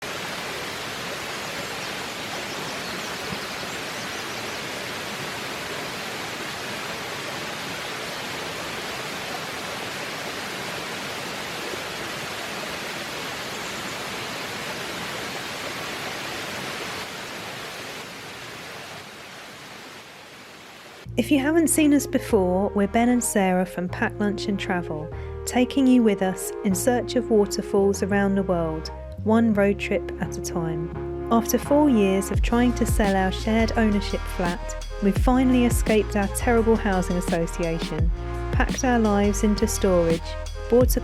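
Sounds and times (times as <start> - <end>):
waterfall rushing: 0.0 - 21.1.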